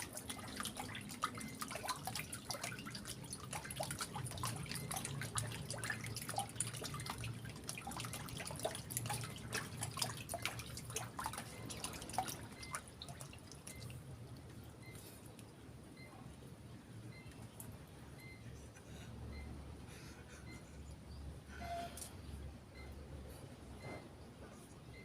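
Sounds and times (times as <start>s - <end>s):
water dripping and splashing: 0.0s - 14.8s.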